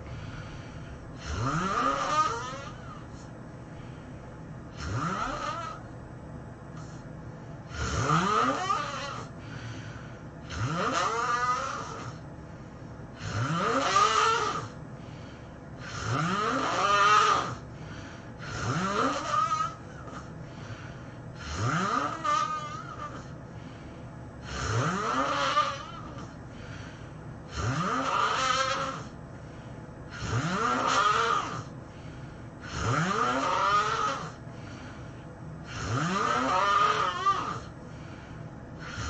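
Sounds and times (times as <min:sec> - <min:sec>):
quiet breathing: 0:00.0 - 0:01.4, 0:02.5 - 0:04.9, 0:09.2 - 0:10.6, 0:12.0 - 0:13.4, 0:14.7 - 0:16.0, 0:17.5 - 0:18.8, 0:19.7 - 0:21.6, 0:22.8 - 0:24.8, 0:25.9 - 0:27.8, 0:29.0 - 0:30.4, 0:31.5 - 0:33.0, 0:34.2 - 0:36.0, 0:37.6 - 0:39.0
person snoring loudly: 0:00.0 - 0:03.2, 0:04.7 - 0:05.9, 0:07.7 - 0:12.2, 0:13.2 - 0:14.8, 0:15.8 - 0:17.7, 0:18.4 - 0:20.8, 0:21.4 - 0:23.4, 0:24.4 - 0:26.8, 0:27.5 - 0:29.2, 0:30.1 - 0:31.8, 0:32.6 - 0:34.4, 0:35.6 - 0:37.7, 0:38.8 - 0:39.0.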